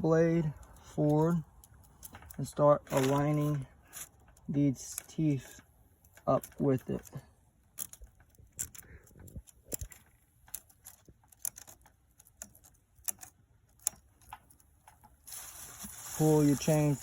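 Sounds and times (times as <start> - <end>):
saw chain clicking: 15.3 - 17.0.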